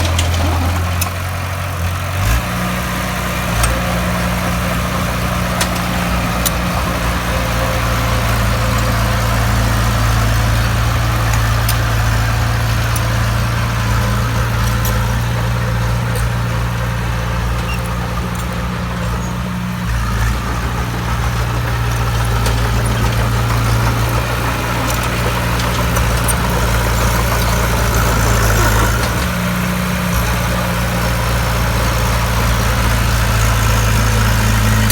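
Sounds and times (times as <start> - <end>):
bulldozer diesel engine running: 0.0 - 34.9.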